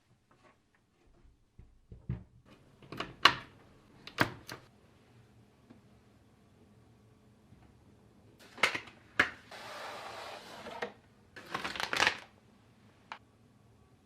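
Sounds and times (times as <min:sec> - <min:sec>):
packaging rustling: 0:11.4 - 0:12.3.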